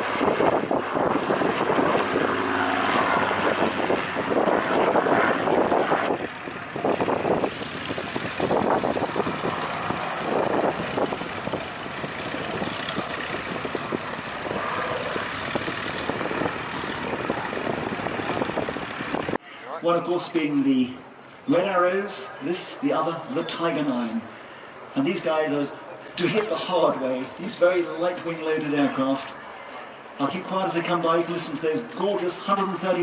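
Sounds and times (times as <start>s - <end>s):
propeller aircraft flying past: 0.0s - 19.4s.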